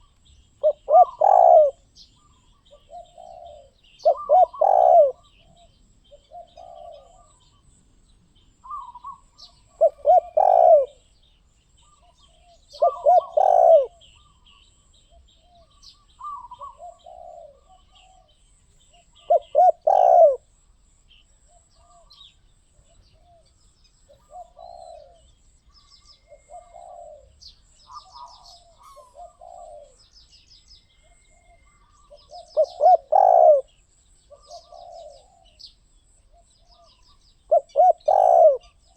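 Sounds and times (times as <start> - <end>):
dove cooing: 0.0 - 7.7, 8.6 - 11.1, 11.8 - 20.5, 21.4 - 30.1, 31.0 - 35.7, 36.3 - 38.9
small birds chirping: 0.0 - 38.9.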